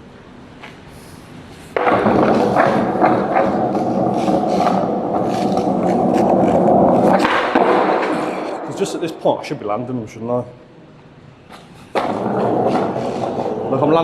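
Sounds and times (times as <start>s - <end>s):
skateboard wheels rolling on wet pavement: 1.8s - 8.8s, 11.9s - 13.9s.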